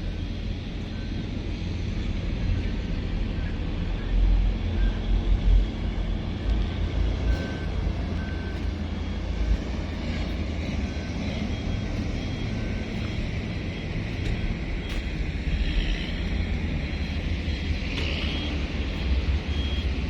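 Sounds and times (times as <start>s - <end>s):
excavator diesel engine running: 0.0s - 20.0s
short beeps: 10.1s - 19.9s.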